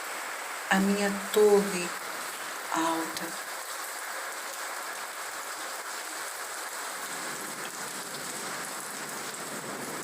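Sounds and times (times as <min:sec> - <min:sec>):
steady rain: 0:00.0 - 0:10.0
raindrop ticks: 0:07.5 - 0:08.3.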